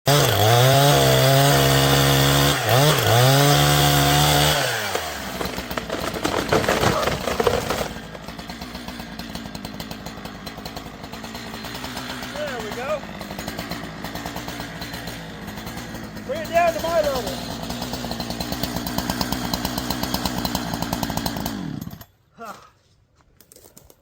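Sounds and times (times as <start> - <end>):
chainsaw running: 0.1 - 22.1
irregular crackling: 4.7 - 8.3.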